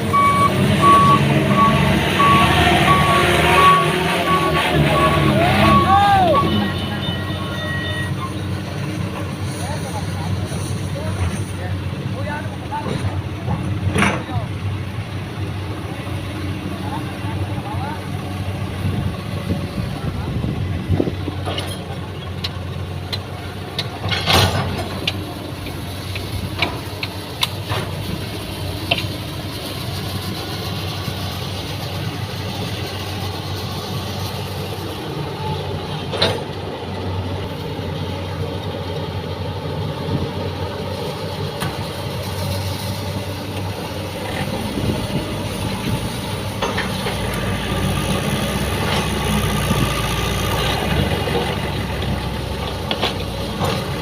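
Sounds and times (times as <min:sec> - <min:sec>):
heavy diesel engine running: 0:00.0 - 0:54.0.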